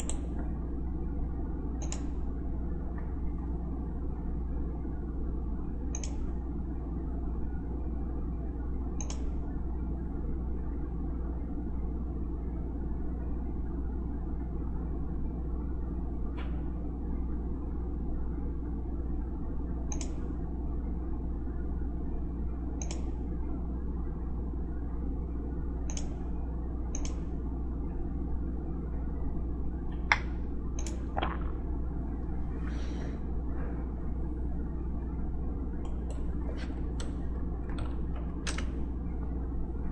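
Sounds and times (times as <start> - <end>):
steady low hum: 0.0 - 39.9
computer mouse clicks: 1.8 - 2.2, 5.9 - 6.3, 9.0 - 9.3, 19.9 - 20.2, 22.8 - 23.1, 25.9 - 26.2, 26.9 - 27.2.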